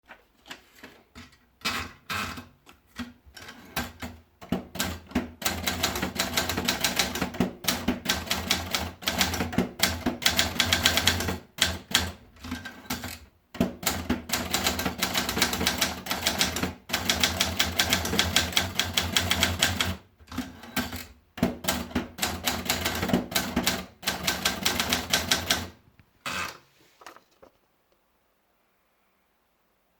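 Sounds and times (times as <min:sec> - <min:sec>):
electronic typewriter typing: 0:03.4 - 0:25.7.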